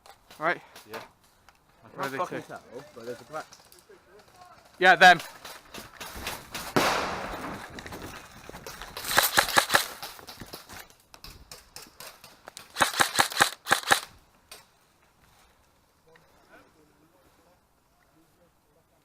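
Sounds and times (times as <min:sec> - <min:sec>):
airsoft gun bursts: 0:09.0 - 0:10.1, 0:12.7 - 0:14.1.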